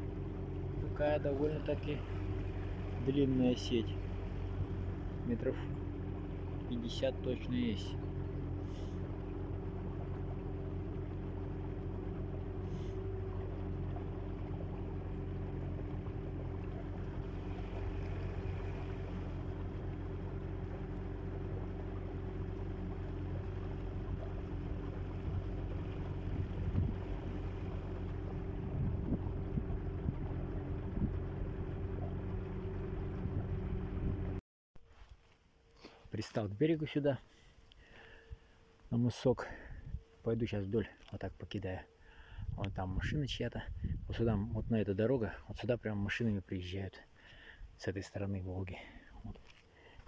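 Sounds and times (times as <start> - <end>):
boat motor running: 0.0 - 34.4
wind: 0.0 - 50.0.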